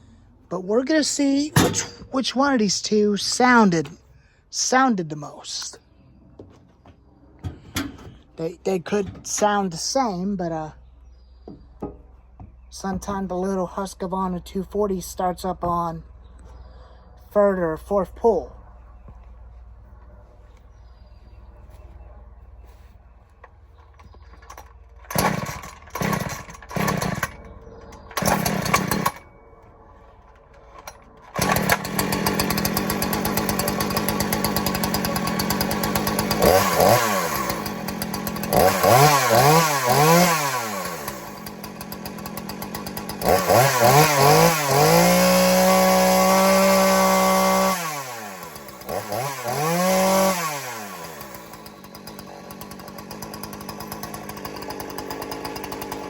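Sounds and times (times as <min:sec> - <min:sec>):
chainsaw starter cord sputters: 0:23.8 - 0:29.3, 0:30.0 - 0:56.0
chainsaw running and revving: 0:25.1 - 0:27.5, 0:28.2 - 0:29.2, 0:31.3 - 0:56.0.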